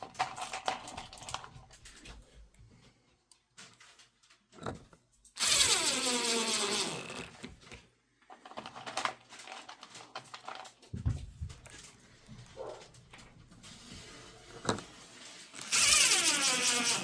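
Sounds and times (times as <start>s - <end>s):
handling clicks and knocks: 3.5s - 5.4s
power drill whining: 5.4s - 7.5s, 15.4s - 17.0s.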